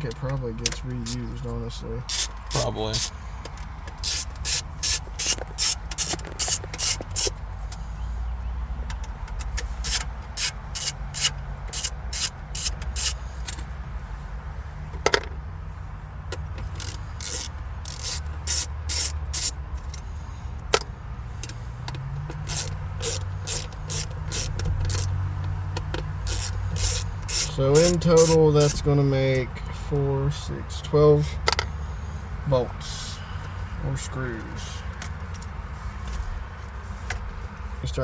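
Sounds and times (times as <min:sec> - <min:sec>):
screwdriver scratching on screws: 0:02.0 - 0:03.2, 0:04.0 - 0:07.3, 0:09.8 - 0:13.2, 0:16.7 - 0:19.6, 0:22.4 - 0:25.1, 0:26.2 - 0:28.8.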